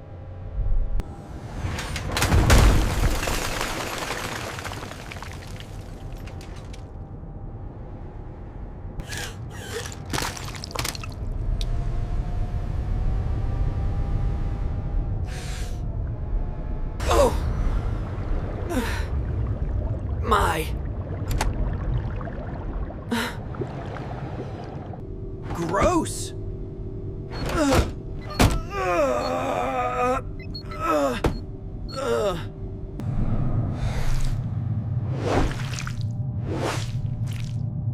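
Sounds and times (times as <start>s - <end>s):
low cockpit hum: 0.0s - 2.0s, 11.1s - 37.9s
low rumbling: 4.4s - 37.9s
man groaning: 17.0s - 17.6s, 28.6s - 31.3s, 32.0s - 32.6s.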